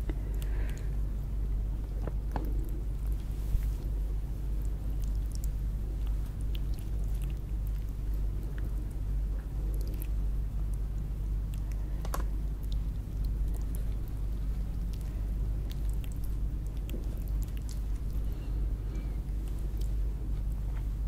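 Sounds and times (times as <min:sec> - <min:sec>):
steady low hum: 0:00.0 - 0:21.0
chewing and biting: 0:04.6 - 0:20.9.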